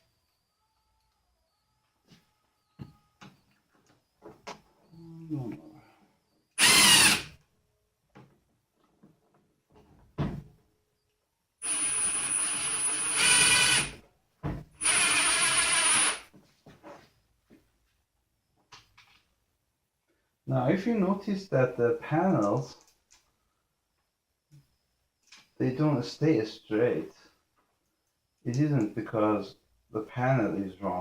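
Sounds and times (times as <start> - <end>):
power drill whining: 6.6 - 7.4, 11.6 - 14.0, 14.8 - 16.2.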